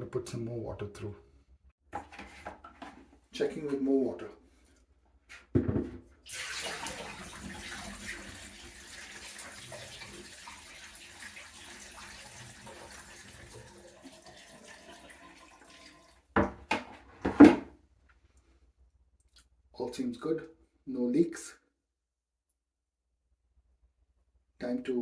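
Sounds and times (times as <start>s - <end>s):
water running down sink drain: 6.2s - 16.4s.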